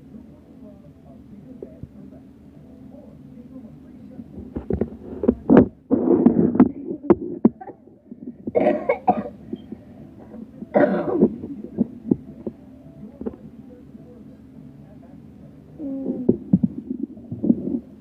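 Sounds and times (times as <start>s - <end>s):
person coughing: 8.5s - 9.4s, 10.7s - 11.4s.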